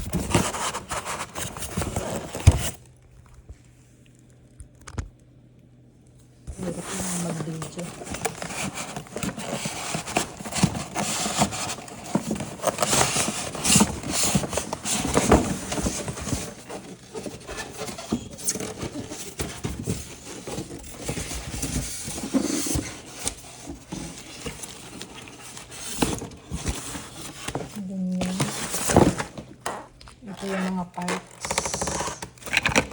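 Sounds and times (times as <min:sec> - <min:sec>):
box knocks and scrapes: 0:07.4 - 0:29.9.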